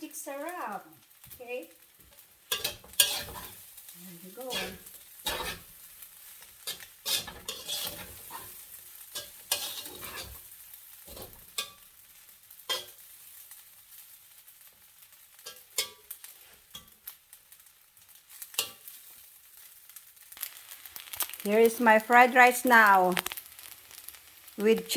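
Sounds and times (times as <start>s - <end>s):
rice sizzling in a pan: 0.0s - 24.9s
stirring knocks and scrapes: 2.0s - 3.6s, 4.4s - 5.7s, 6.6s - 8.6s, 9.2s - 10.4s.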